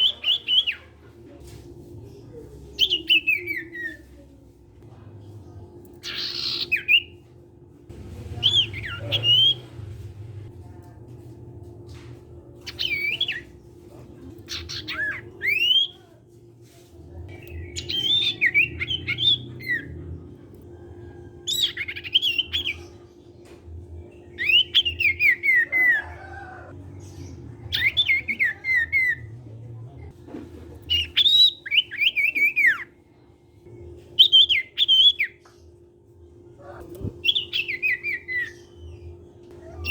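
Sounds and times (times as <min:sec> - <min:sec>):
songbird whistling: 0:08.4 - 0:09.8, 0:17.3 - 0:19.9, 0:30.9 - 0:32.9, 0:37.2 - 0:39.0.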